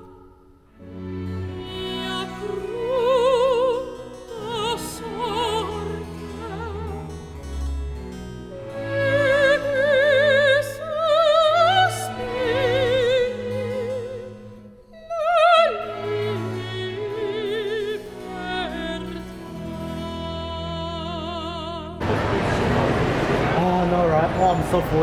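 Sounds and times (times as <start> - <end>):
light musical accompaniment: 0.0 - 25.0
operatic voice singing: 1.6 - 7.0.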